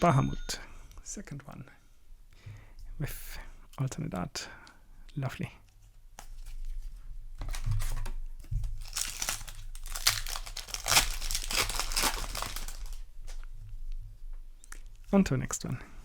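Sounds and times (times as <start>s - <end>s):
foil wrapper crinkling and tearing: 7.5s - 13.1s.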